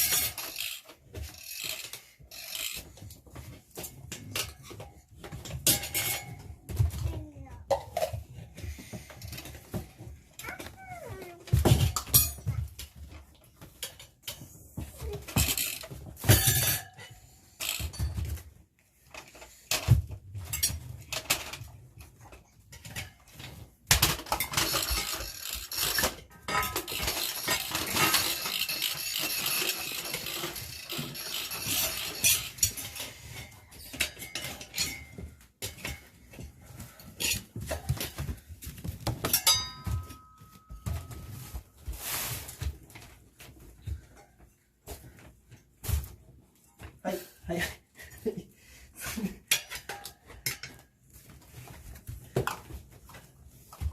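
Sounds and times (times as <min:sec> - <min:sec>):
metal tools clinking on wheel rim: 0:24.3 - 0:36.0, 0:39.2 - 0:41.2.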